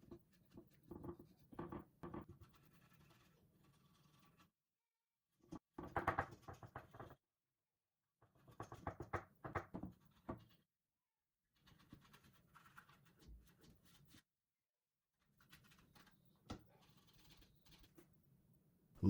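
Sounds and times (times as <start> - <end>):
scratching and rubbing strokes: 2.3 - 4.6.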